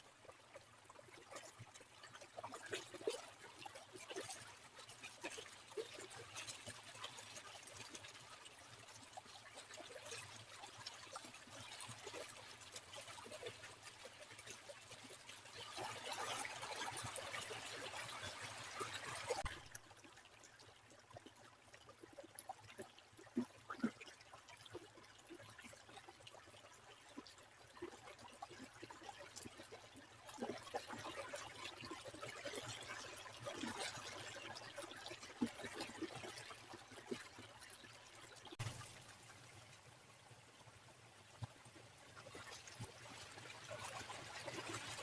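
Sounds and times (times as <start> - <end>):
stream trickling and gurgling: 0.0 - 45.0.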